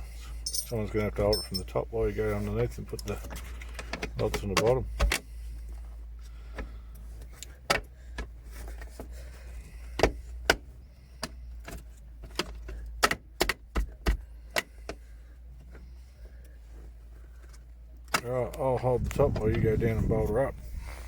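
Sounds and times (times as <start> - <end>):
tools clicking and knocking: 0.4 - 1.7.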